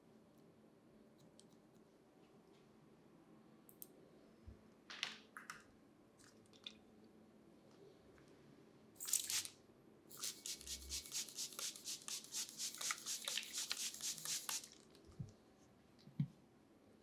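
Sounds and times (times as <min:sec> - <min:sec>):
hair rustle: 0:09.0 - 0:09.5, 0:10.1 - 0:14.8
sharp scratchy strokes: 0:10.1 - 0:14.7.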